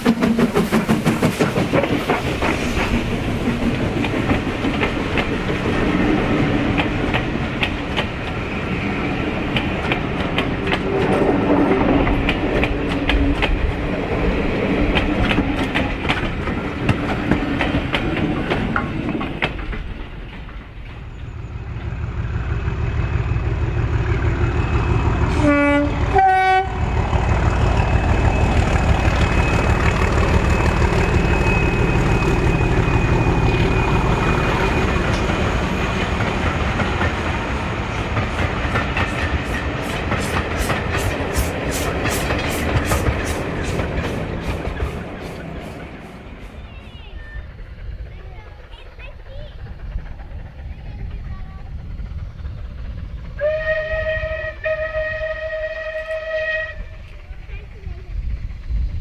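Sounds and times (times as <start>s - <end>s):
train wheels clicking over joints: 0.0s - 26.2s, 26.8s - 59.0s
low throb of moving train: 0.0s - 59.0s
two-tone train horn blasts: 25.2s - 27.0s, 53.4s - 57.0s.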